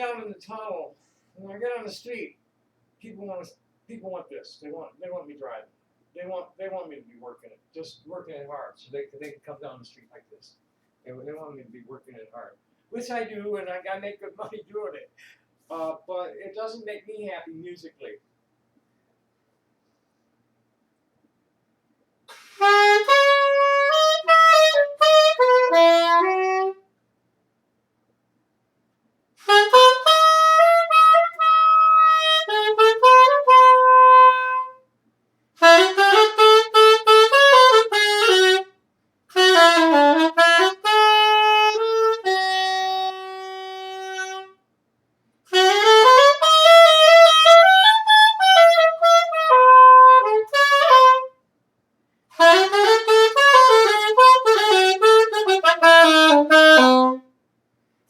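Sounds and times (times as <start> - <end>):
solo saxophone: 22.3 - 26.9, 29.4 - 34.9, 35.6 - 44.6, 45.5 - 51.4, 52.3 - 57.4.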